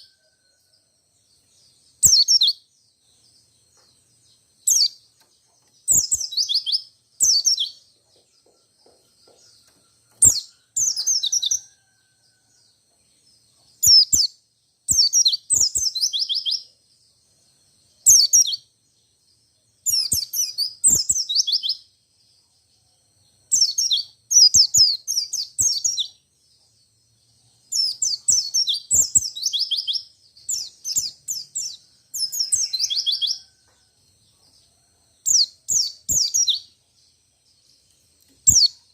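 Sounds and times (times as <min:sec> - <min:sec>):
bird twittering song: 0:00.0 - 0:38.9.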